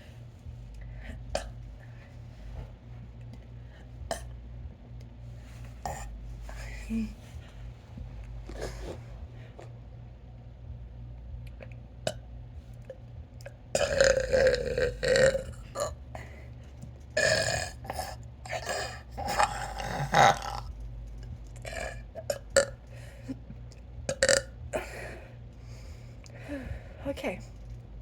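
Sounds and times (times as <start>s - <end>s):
person burping: 13.8s - 16.0s, 17.2s - 20.7s, 24.1s - 24.9s.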